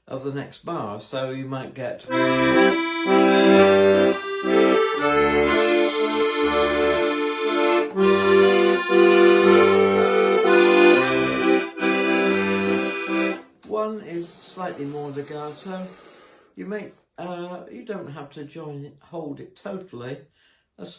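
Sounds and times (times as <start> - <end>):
accordion bass and chords: 2.1 - 13.6.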